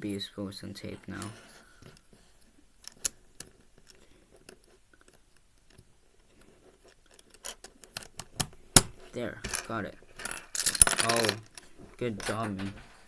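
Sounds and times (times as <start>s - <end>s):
plastic puzzle pieces clicking: 2.8s - 8.9s, 9.5s - 12.6s.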